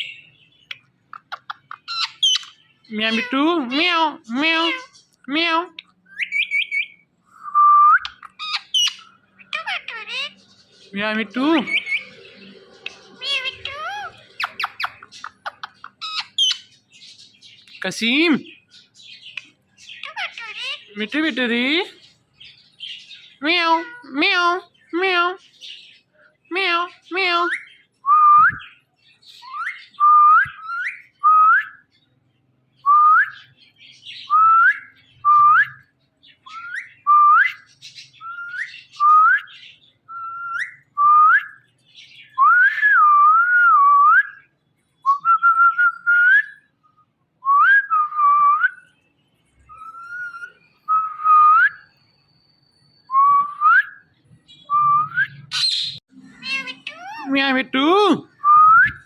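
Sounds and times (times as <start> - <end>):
parrot whistling: 49.7 - 52.0, 54.6 - 59.0.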